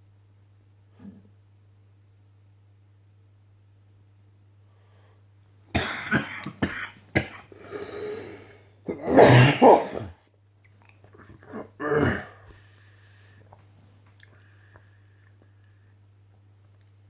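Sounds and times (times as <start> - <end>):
man sneezing: 5.8 - 10.1, 11.5 - 12.5
breathy intake: 7.2 - 10.1.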